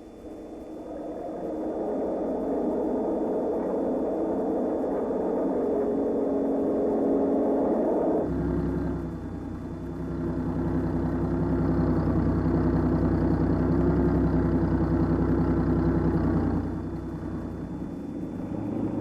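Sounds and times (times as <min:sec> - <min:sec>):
bulldozer engine running: 0:08.3 - 0:19.0.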